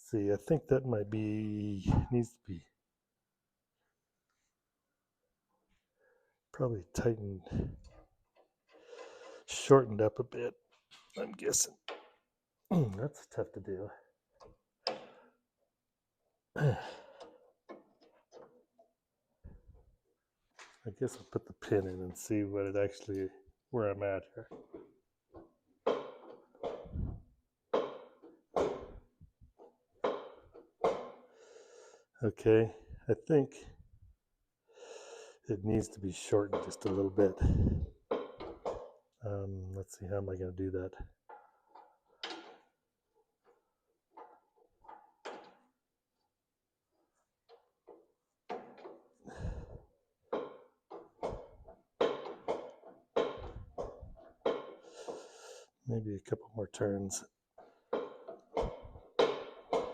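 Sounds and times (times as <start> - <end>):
metal knocks and clunks: 24.4 - 31.2, 35.8 - 39.2, 47.4 - 55.2, 57.6 - 59.9.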